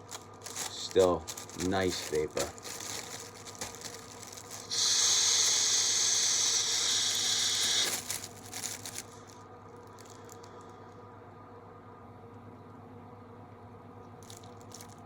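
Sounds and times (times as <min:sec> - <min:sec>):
plastic bag crinkling: 0:00.0 - 0:10.9, 0:14.2 - 0:15.0
air hissing through valve: 0:04.6 - 0:08.1.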